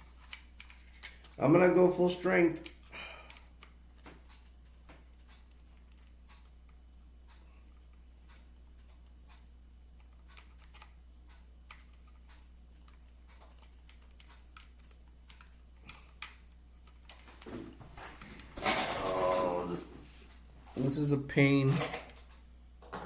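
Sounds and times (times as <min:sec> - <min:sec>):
plastic toy parts clicking: 0:10.0 - 0:11.0, 0:11.7 - 0:17.5.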